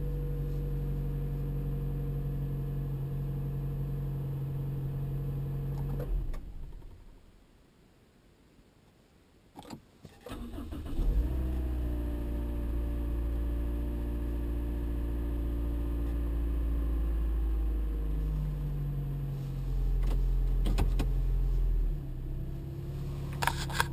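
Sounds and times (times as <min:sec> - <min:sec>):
car engine cranking and idling: 0:00.0 - 0:07.2, 0:10.1 - 0:23.9
ignition clicks: 0:20.0 - 0:21.2.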